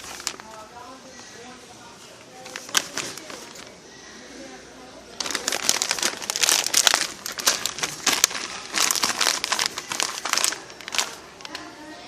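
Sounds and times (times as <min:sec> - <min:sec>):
plastic packaging crinkling: 0:00.0 - 0:00.8, 0:02.4 - 0:03.8, 0:05.2 - 0:12.0.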